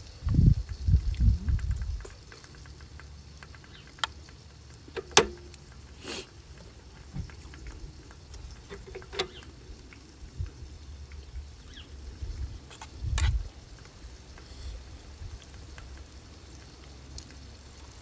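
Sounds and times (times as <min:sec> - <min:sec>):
wind buffeting microphone: 0:00.0 - 0:02.2, 0:09.3 - 0:15.8
small clicks and taps: 0:01.1 - 0:11.3
brief hiss: 0:06.0 - 0:06.4.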